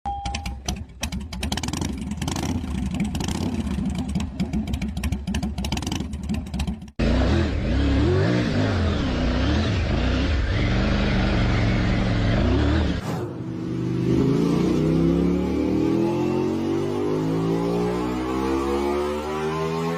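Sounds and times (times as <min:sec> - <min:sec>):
engine revving: 0:06.9 - 0:19.9
engine accelerating: 0:07.0 - 0:19.9.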